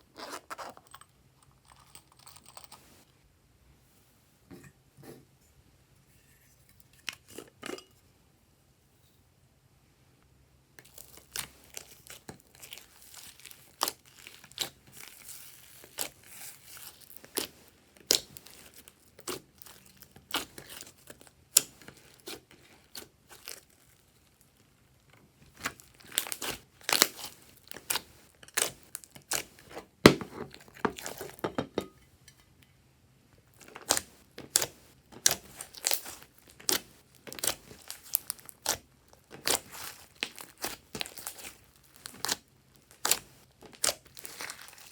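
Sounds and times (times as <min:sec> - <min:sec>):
hands squishing sticky slime: 0:10.8 - 0:24.4, 0:25.5 - 0:31.4, 0:33.6 - 0:44.9.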